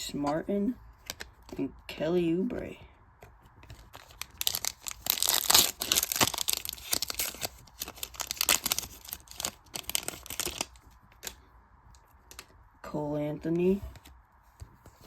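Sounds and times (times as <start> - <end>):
plastic wrapper tearing and crinkling: 3.7 - 11.4.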